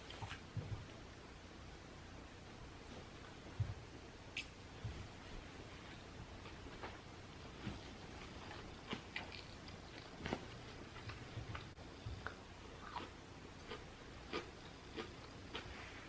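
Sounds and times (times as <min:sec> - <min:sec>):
person chewing: 0:08.2 - 0:16.0.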